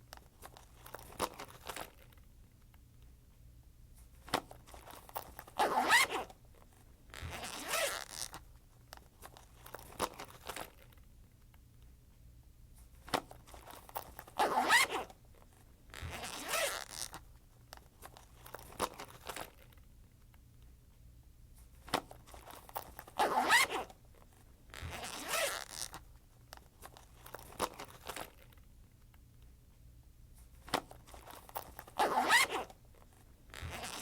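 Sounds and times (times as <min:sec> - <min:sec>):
handling clicks and rustles: 0:00.0 - 0:02.9, 0:04.0 - 0:11.7, 0:12.8 - 0:20.7, 0:21.6 - 0:29.5, 0:30.4 - 0:34.0
backpack zipper pulled: 0:04.7 - 0:06.4, 0:07.1 - 0:08.4, 0:13.5 - 0:15.2, 0:15.9 - 0:17.2, 0:22.0 - 0:24.0, 0:24.7 - 0:26.0, 0:30.7 - 0:34.0.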